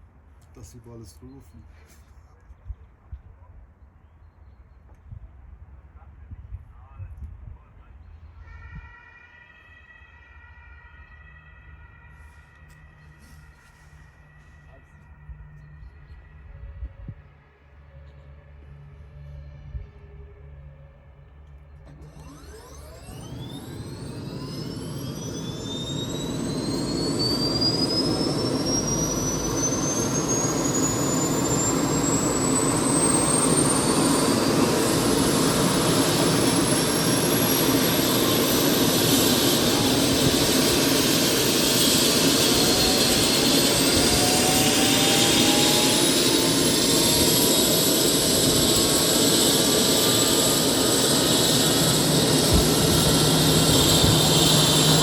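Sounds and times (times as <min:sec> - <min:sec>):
helicopter turbine whine: 0:11.1 - 0:55.0
lower whine climbing in pitch: 0:11.4 - 0:55.0.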